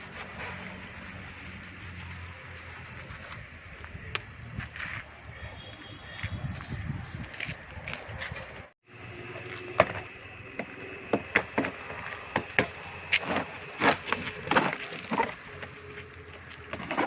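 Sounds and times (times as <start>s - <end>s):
faint high whine: 8.9s - 17.0s.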